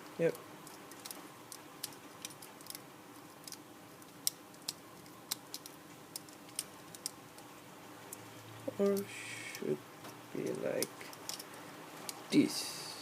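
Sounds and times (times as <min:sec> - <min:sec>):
plastic toy parts clicking: 0:00.6 - 0:02.8, 0:03.4 - 0:07.5.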